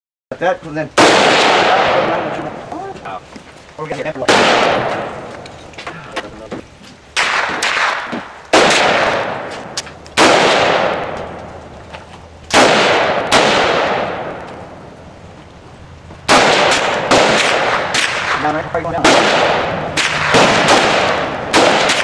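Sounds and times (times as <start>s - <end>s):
gunshots with echo: 1.0s - 2.7s, 4.2s - 5.4s, 7.2s - 11.4s, 12.5s - 14.7s, 16.3s - 22.0s.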